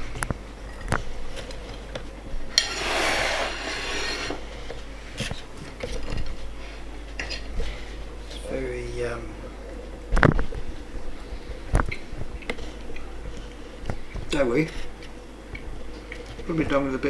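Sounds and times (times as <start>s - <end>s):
rubbing and scraping: 2.6s - 4.5s.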